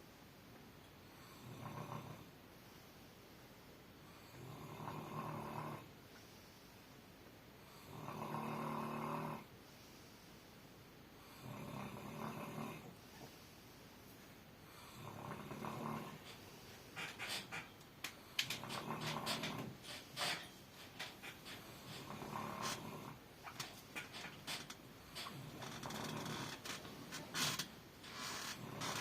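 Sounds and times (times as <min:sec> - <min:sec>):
buzzy snores: 0:01.2 - 0:02.3, 0:04.1 - 0:05.9, 0:07.7 - 0:09.5, 0:11.3 - 0:13.0, 0:14.7 - 0:17.8, 0:18.4 - 0:29.0.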